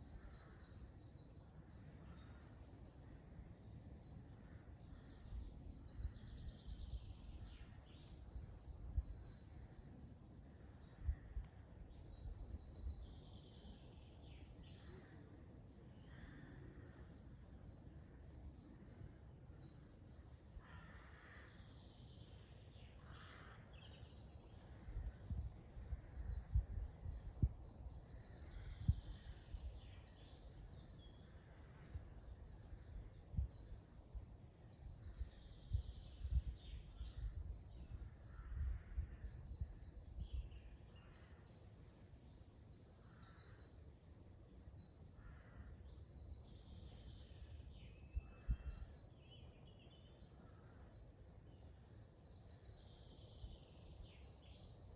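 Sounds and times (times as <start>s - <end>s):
birds singing and calling: 0.0s - 54.9s
harsh caw-like bird calls: 20.6s - 21.7s, 23.0s - 23.8s, 38.2s - 39.3s, 43.0s - 43.8s, 45.2s - 45.8s.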